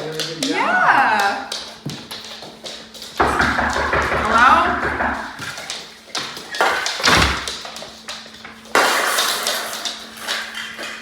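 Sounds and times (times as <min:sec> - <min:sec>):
knocks on door: 0:03.2 - 0:05.5
heavy thud: 0:03.2 - 0:05.6.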